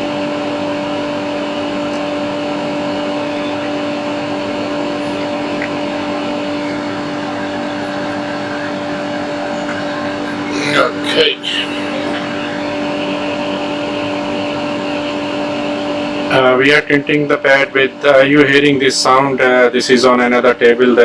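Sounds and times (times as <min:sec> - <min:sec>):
constant hum: 0:01.8 - 0:15.2.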